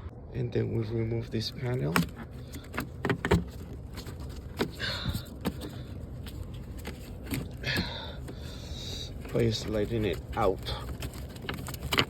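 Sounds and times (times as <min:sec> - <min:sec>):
scraping rustle: 0:01.4 - 0:12.0
plastic panel clicks and knocks: 0:01.9 - 0:03.8.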